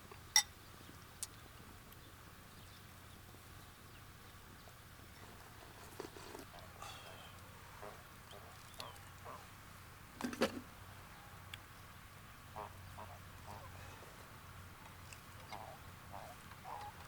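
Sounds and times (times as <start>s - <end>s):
low steady hum: 0.0s - 17.0s
faint farmyard animal calls: 5.6s - 9.8s, 10.8s - 17.0s.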